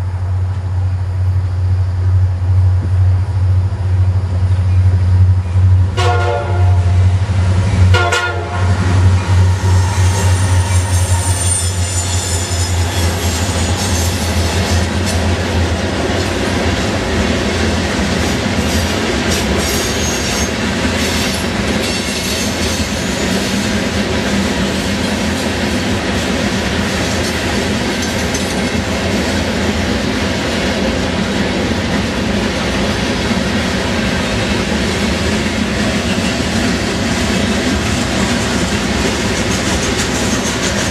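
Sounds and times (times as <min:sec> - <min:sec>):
diesel locomotive engine drone: 0:00.0 - 0:40.9
freight cars rumbling on rails: 0:00.0 - 0:40.9
locomotive horn blast: 0:06.0 - 0:07.0, 0:07.9 - 0:13.1.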